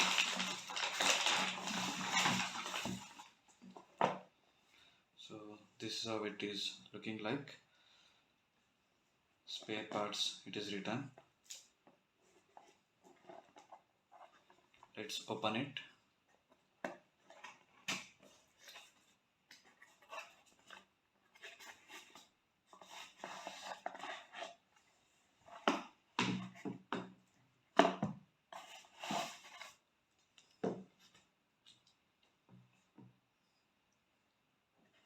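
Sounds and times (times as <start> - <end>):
packaging rustling: 0.0 - 3.9.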